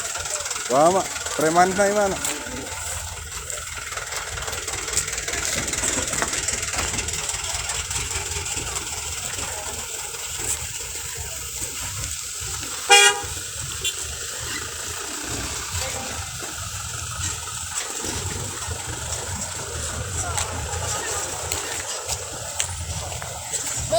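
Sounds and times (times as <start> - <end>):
engines rumbling: 0.0 - 23.9
vehicle horn toot: 12.8 - 14.1.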